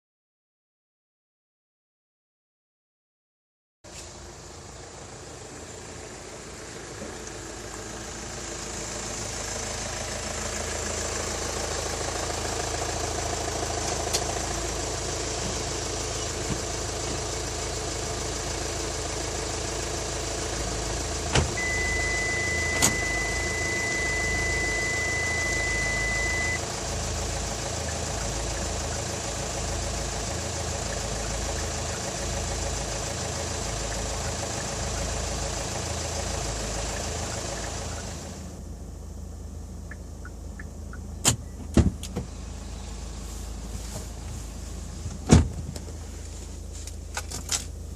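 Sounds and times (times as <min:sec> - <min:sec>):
car engine idling: 0:03.9 - 0:47.9
high-pitched beep: 0:21.6 - 0:26.6.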